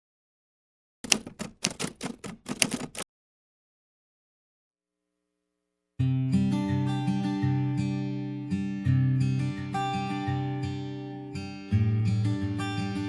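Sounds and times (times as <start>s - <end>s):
sharp clacks: 1.0s - 3.0s
plucked guitar music: 6.0s - 13.0s.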